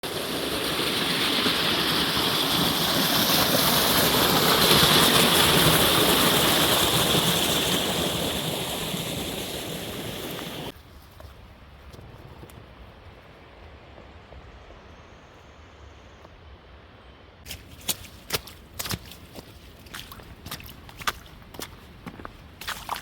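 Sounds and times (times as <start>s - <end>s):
running water rushing: 0.0s - 10.7s, 17.5s - 23.0s.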